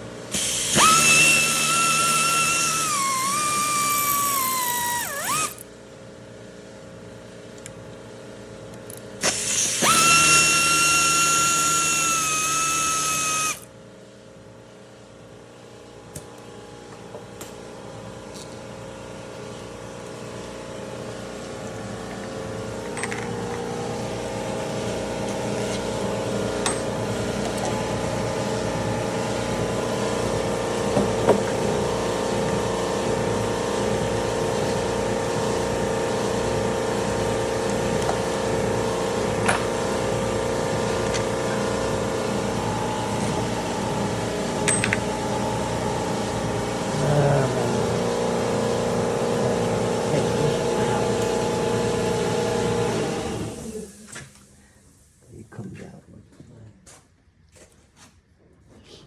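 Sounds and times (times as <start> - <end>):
power driver whining: 0.3 - 5.7, 8.9 - 13.7, 35.1 - 54.9.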